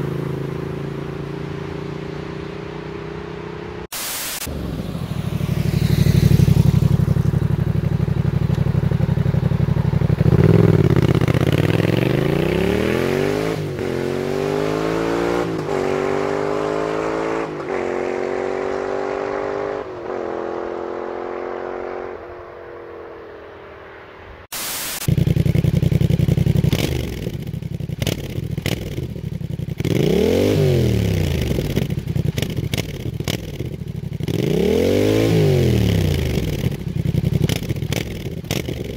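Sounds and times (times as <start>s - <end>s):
motorcycle engine accelerating: 0.0s - 3.9s, 4.5s - 24.5s, 25.1s - 38.9s
exhaust crackling and popping: 6.2s - 12.2s, 25.1s - 29.9s, 31.4s - 34.2s.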